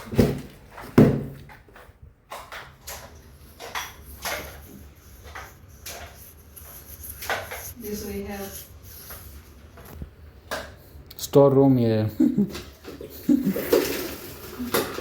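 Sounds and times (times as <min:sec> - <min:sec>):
loud household thump: 0:00.0 - 0:01.4.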